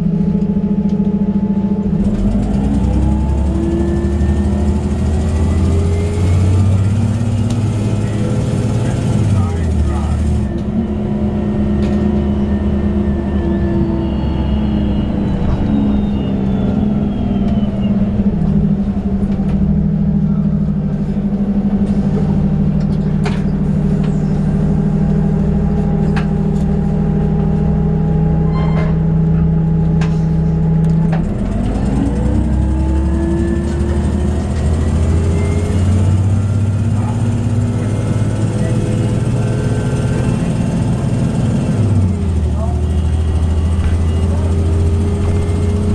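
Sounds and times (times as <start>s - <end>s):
bus engine drone: 0.0s - 45.9s.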